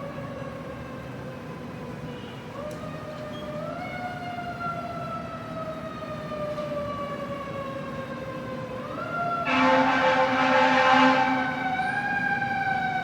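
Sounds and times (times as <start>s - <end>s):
city traffic: 0.0s - 13.0s
fire truck siren wailing: 0.0s - 13.0s
fire truck horn: 9.4s - 12.6s.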